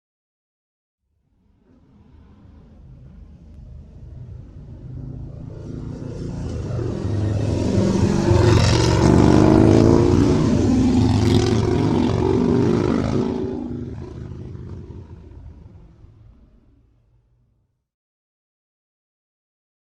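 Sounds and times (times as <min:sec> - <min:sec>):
motorcycle engine passing by: 0:01.6 - 0:16.8.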